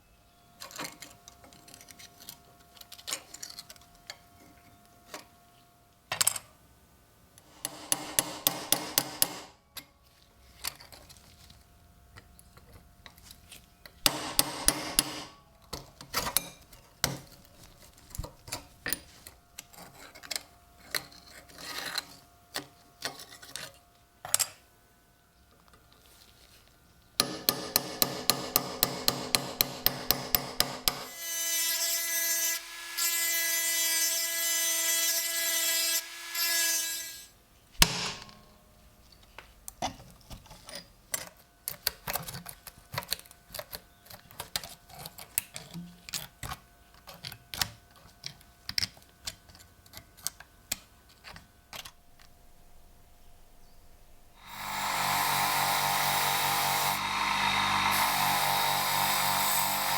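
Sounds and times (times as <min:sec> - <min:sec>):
small hammer tapping metal: 0:14.1 - 0:15.3, 0:27.2 - 0:31.1.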